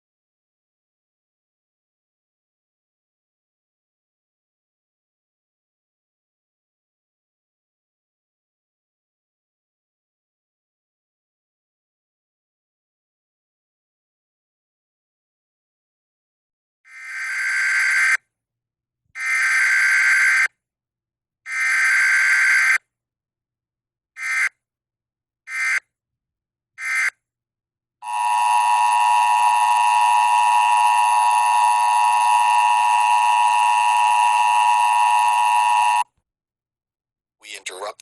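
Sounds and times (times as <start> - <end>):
buzzy digital header tones: 28.0 - 36.0.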